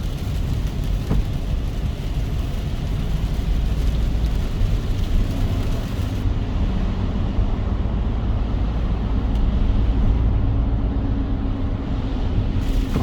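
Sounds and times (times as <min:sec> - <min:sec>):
car engine and tyres rumbling: 0:00.0 - 0:13.0.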